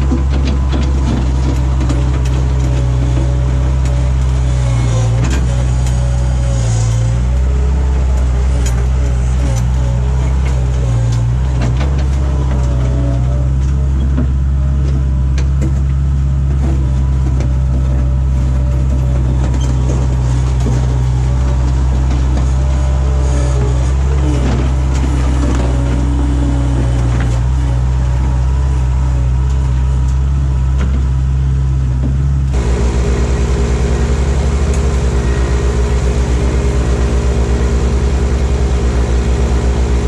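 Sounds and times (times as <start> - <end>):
loader engine running under load: 0.0 - 40.0
faint wavering whine: 32.6 - 40.0.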